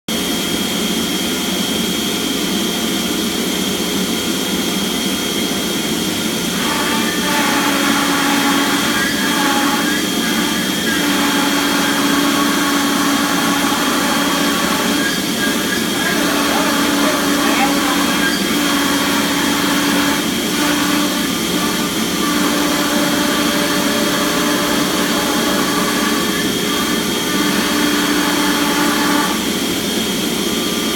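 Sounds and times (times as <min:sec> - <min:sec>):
cnc router spindle whine: 0:00.1 - 0:30.9
loud machine noise: 0:00.1 - 0:30.9.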